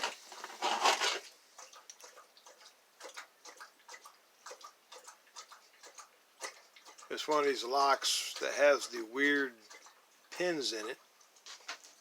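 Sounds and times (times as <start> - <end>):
handling rustle: 0.0 - 1.3.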